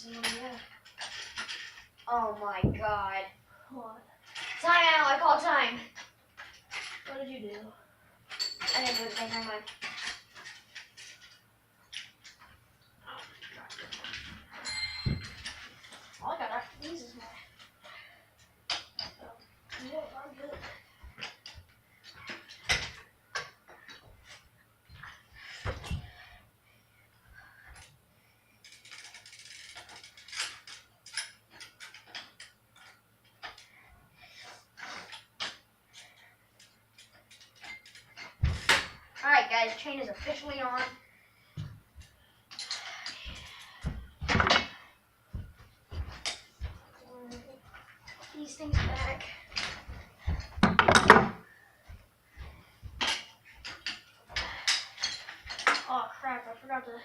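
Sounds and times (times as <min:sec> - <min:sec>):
metal parts clanking: 0:00.2 - 0:02.1, 0:08.3 - 0:12.4, 0:34.4 - 0:38.9, 0:42.5 - 0:44.8, 0:53.0 - 0:55.9
metal clicks and knocks: 0:50.4 - 0:51.4.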